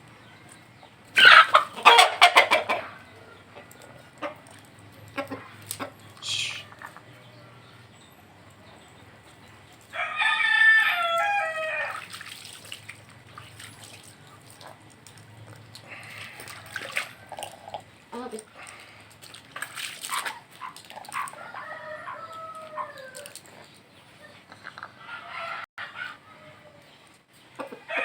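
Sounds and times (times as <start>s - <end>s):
chickens calling: 0.0s - 28.0s
rooster crowing: 9.9s - 12.0s, 21.3s - 23.4s, 25.0s - 26.8s.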